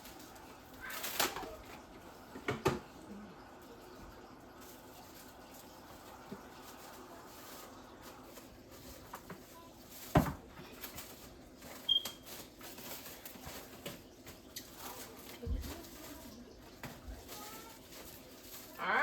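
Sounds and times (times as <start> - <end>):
light clicks and rustles: 4.6 - 18.8.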